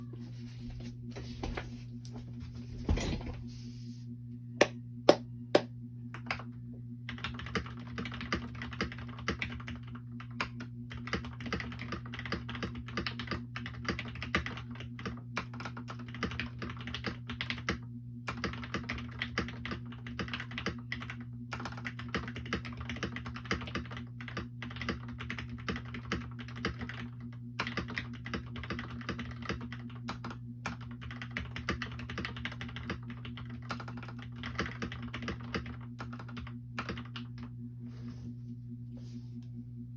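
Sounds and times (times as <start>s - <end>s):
steady low hum: 0.0s - 39.9s
mechanical keyboard typing: 7.1s - 37.3s.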